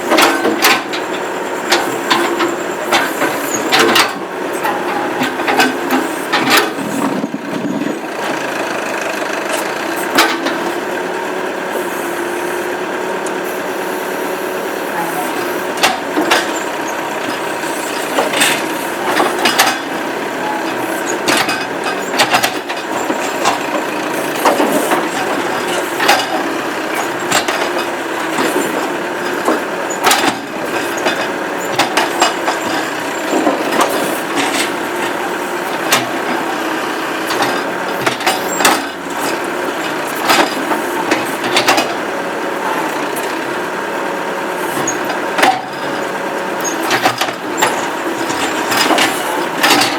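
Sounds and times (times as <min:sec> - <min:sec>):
tractor engine under load: 0:00.0 - 0:49.9
backhoe knocking on tree stump: 0:21.1 - 0:36.5.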